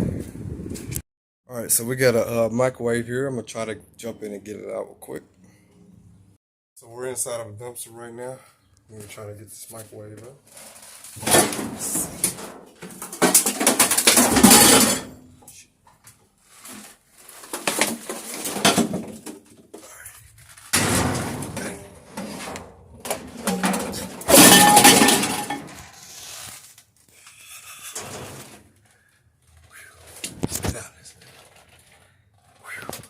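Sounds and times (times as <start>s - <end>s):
junk clattering in metal dumpster: 11.2s - 15.1s, 17.6s - 19.4s, 20.7s - 25.8s.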